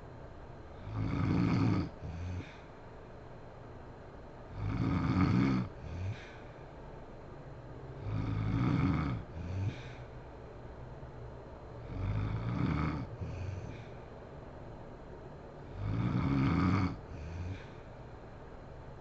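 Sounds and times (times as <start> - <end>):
woman snoring: 0.8 - 2.6, 4.5 - 6.4, 8.0 - 10.1, 11.9 - 13.9, 15.7 - 17.7.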